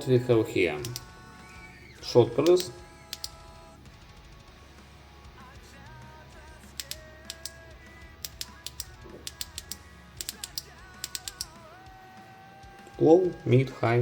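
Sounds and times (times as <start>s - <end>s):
quiet background music: 0.0s - 14.0s
flashlight button clicks: 0.8s - 1.1s, 2.5s - 3.4s, 6.8s - 7.6s, 8.2s - 11.6s.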